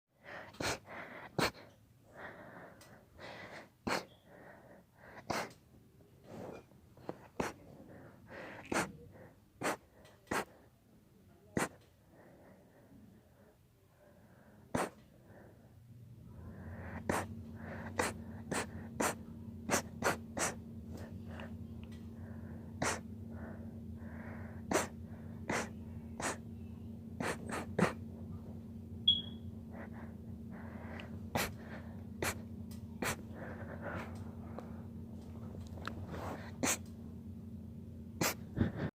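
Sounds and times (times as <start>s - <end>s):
breathing: 0.2s - 5.6s, 6.2s - 10.8s, 12.0s - 28.0s, 29.7s - 32.4s, 33.0s - 35.0s, 38.2s - 38.9s
steady low hum: 0.2s - 38.9s
person sneezing: 3.9s - 4.2s, 8.6s - 9.0s, 9.6s - 10.5s, 11.6s - 11.8s, 14.8s - 15.0s, 17.0s - 20.6s, 22.8s - 23.0s, 24.7s - 26.4s, 27.2s - 28.0s, 33.0s - 33.3s, 38.2s - 38.9s.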